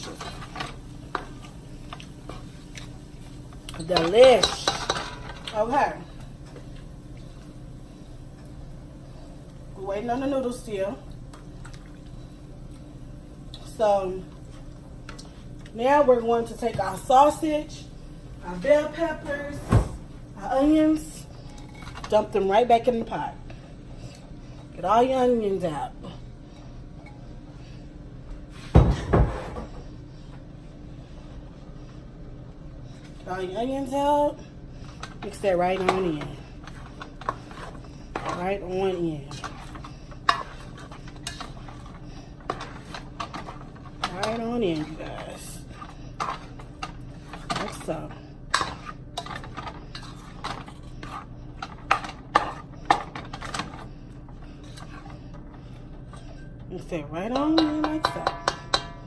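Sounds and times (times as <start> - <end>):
low steady hum: 0.0 - 59.0
spoon scraping against a pot: 34.9 - 53.8
kitchenware knocking against pot: 57.4 - 59.0.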